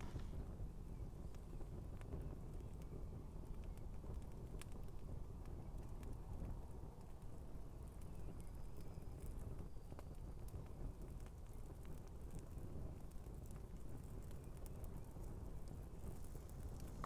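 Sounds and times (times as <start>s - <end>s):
fire crackling and popping: 0.0s - 17.0s
campfire flame rushing: 13.2s - 17.0s.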